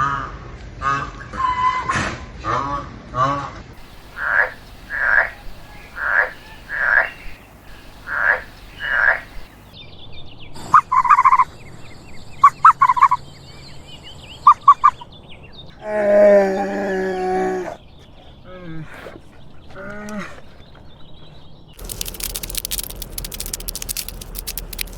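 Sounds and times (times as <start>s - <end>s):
poultry calling: 3.8s - 9.7s
rapid rattling bursts: 21.8s - 24.9s.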